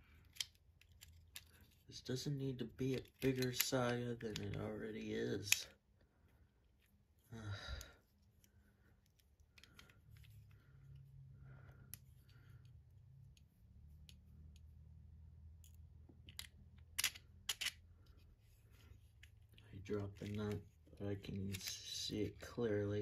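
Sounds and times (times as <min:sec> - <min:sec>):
metal hardware clicks and scrapes: 0:15.6 - 0:18.2.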